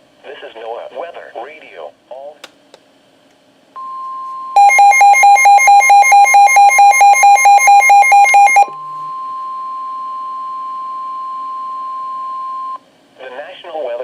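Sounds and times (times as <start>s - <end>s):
steady high warning tone: 3.8s - 12.8s
rapid alert beeping: 4.6s - 8.7s.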